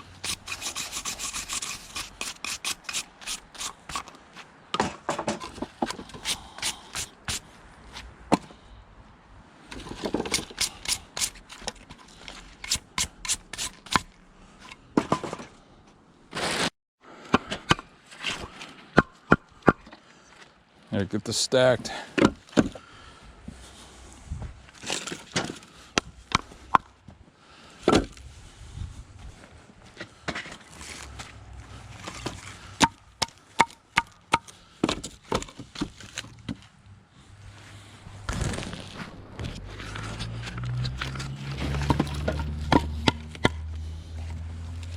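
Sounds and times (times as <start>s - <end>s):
wood scraping: 0.0s - 8.1s, 30.0s - 36.8s, 37.5s - 44.9s.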